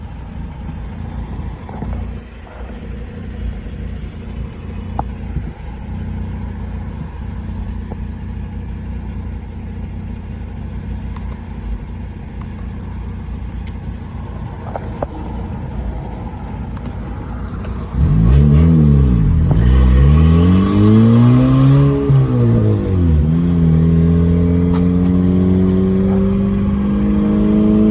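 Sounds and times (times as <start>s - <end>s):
car engine running: 0.0s - 27.9s
engine revving hard: 17.7s - 27.9s.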